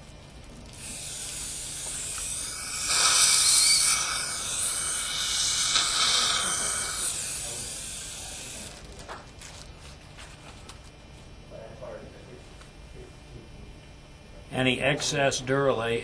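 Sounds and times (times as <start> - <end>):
rushing air hiss: 1.5 - 8.4.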